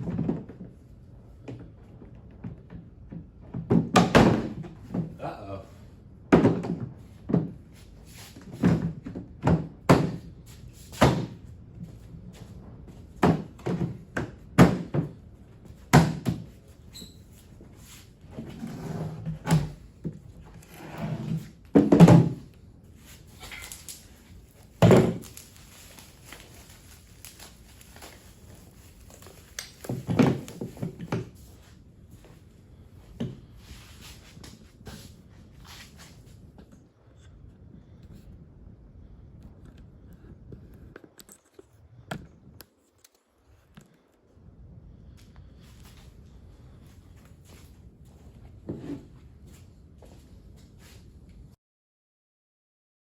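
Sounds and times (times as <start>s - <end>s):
rustling and scraping: 15.5s - 36.7s.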